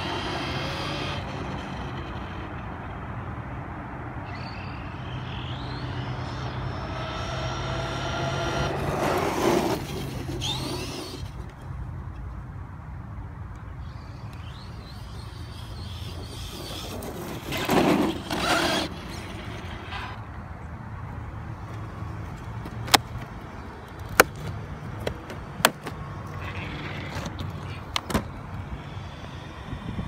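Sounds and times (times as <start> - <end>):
rc truck rushing past: 0.0 - 3.4, 4.0 - 11.8, 13.8 - 20.6, 26.1 - 30.0.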